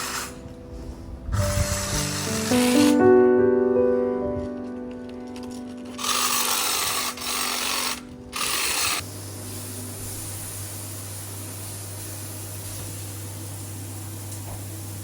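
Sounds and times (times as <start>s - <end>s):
power tool running: 1.4s - 3.0s, 5.9s - 9.0s.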